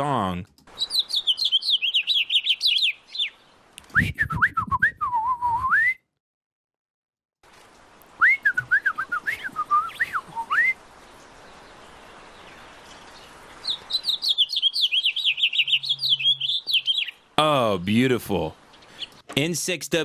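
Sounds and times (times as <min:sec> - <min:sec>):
finch song warbling: 0:00.7 - 0:04.0, 0:08.2 - 0:19.3
person whistling birdsong: 0:03.9 - 0:06.2, 0:08.2 - 0:10.8.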